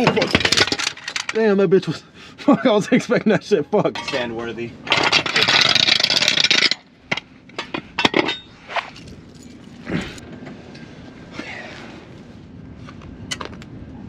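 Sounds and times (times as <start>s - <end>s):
sharp metallic clanks: 3.9s - 9.6s.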